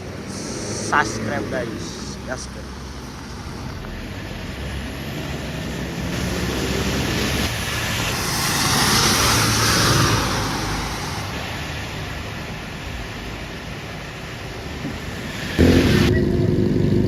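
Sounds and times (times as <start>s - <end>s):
vehicle passing: 0.0s - 11.4s, 15.2s - 17.0s
traffic noise: 0.0s - 17.0s.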